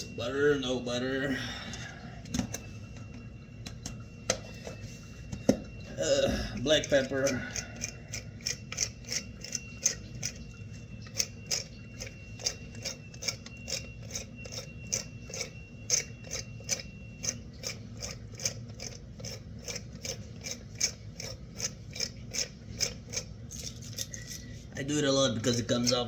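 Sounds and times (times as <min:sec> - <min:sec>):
pepper mill grinding: 0:06.6 - 0:24.5, 0:25.3 - 0:26.0.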